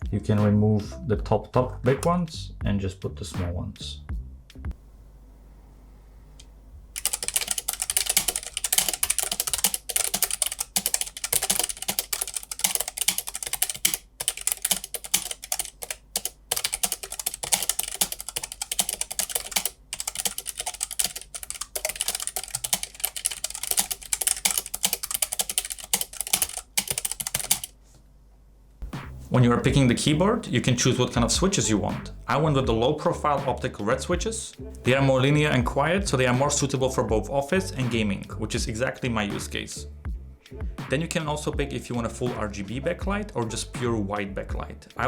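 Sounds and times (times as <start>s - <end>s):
fast typing on mechanical keyboard: 7.0s - 27.7s.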